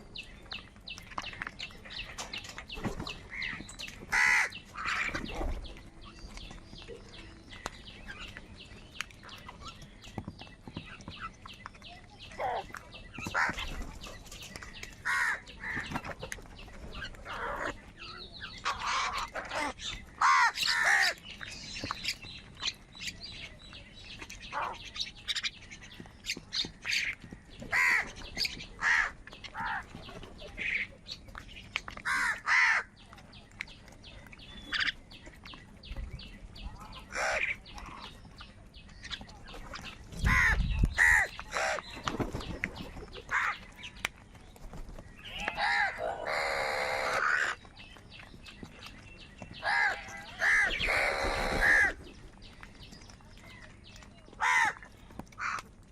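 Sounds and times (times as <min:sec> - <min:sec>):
crows cawing: 0:04.1 - 0:05.2, 0:15.0 - 0:15.8, 0:18.6 - 0:21.2, 0:27.7 - 0:28.1, 0:28.8 - 0:29.8, 0:32.0 - 0:32.9, 0:37.1 - 0:37.5, 0:40.3 - 0:41.8, 0:45.4 - 0:47.6, 0:49.6 - 0:52.0, 0:54.4 - 0:54.8, 0:55.4 - 0:55.6.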